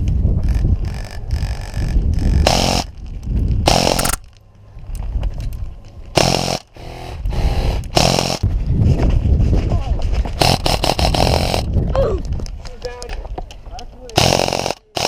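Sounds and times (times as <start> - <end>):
airsoft rifle full auto bursts: 4.0 - 4.2.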